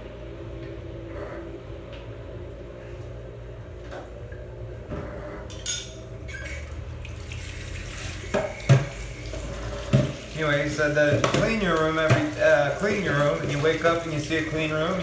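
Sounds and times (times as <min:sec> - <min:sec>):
dishes clinking and knocking: 0:04.9 - 0:06.1, 0:08.3 - 0:09.0, 0:09.8 - 0:10.2, 0:11.0 - 0:12.6
tap running into sink: 0:06.4 - 0:15.0.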